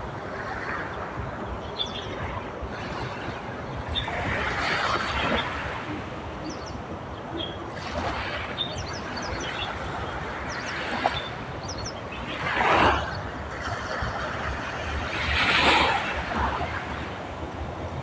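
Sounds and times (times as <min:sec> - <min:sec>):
steady outdoor rumble: 0:00.0 - 0:18.0
small birds chirping: 0:08.6 - 0:09.8, 0:10.5 - 0:12.4.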